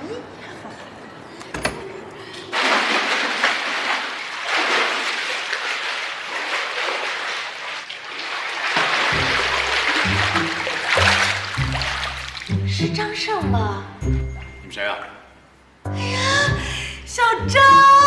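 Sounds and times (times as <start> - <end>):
running water rushing: 2.5 - 13.0
music: 9.2 - 18.0.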